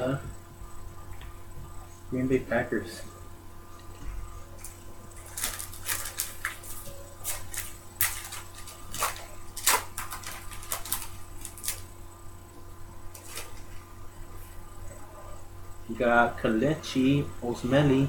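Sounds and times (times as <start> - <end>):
faint hum: 0.0 - 18.0
trading cards rustling and clicking: 4.6 - 11.9.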